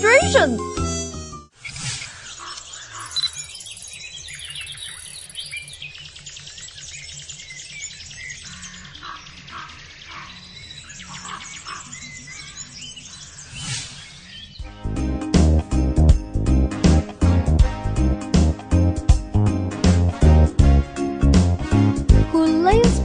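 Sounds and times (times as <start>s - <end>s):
light background music: 0.0s - 1.5s, 14.6s - 23.0s
bird-like chirps: 1.6s - 14.7s.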